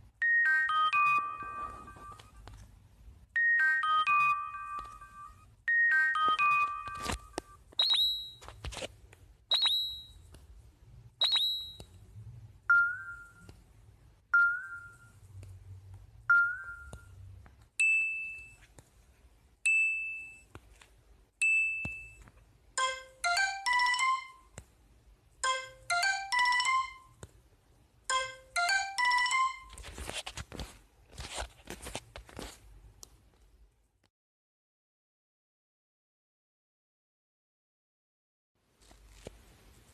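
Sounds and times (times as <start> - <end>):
phone notification tones: 0.2 - 2.4, 3.4 - 8.5, 12.7 - 13.6, 14.3 - 15.2, 16.3 - 17.2, 22.8 - 24.5, 25.4 - 27.1, 28.1 - 29.8.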